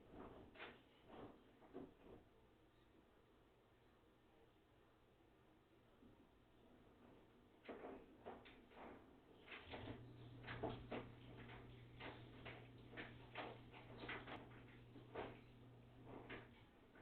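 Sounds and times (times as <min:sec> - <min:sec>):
low motor hum: 0:09.7 - 0:16.8
washing machine drum knocking: 0:09.7 - 0:17.0.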